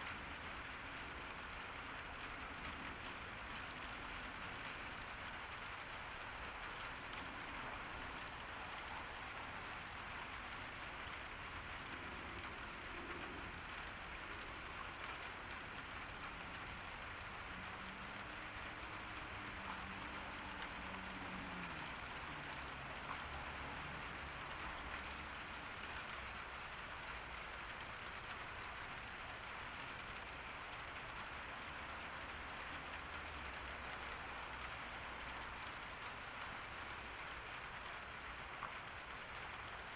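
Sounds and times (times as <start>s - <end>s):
rain falling on a garden: 0.0s - 39.9s.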